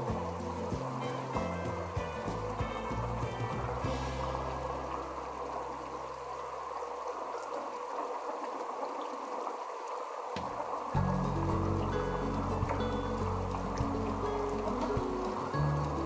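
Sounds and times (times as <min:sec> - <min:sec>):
low background music: 0:00.0 - 0:06.8, 0:11.0 - 0:16.0
heavy rain falling: 0:00.0 - 0:16.0.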